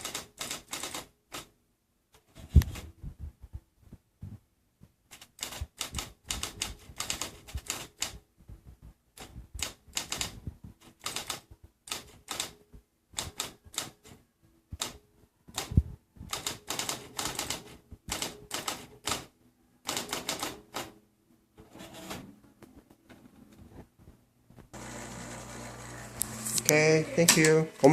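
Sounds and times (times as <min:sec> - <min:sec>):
typewriter keys clicking: 0:00.0 - 0:01.5, 0:05.1 - 0:08.1, 0:09.2 - 0:12.5, 0:13.2 - 0:14.1, 0:16.3 - 0:19.3, 0:19.9 - 0:20.9.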